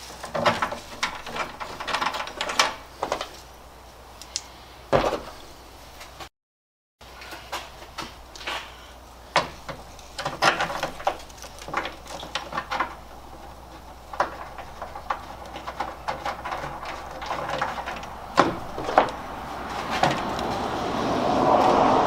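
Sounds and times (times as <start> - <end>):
hardware being handled: 9.4 - 20.6.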